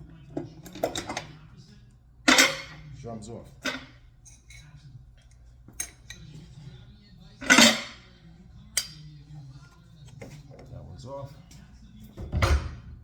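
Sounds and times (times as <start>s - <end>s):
metal tools clanking: 0.4s - 1.4s, 2.3s - 6.5s, 7.4s - 8.1s.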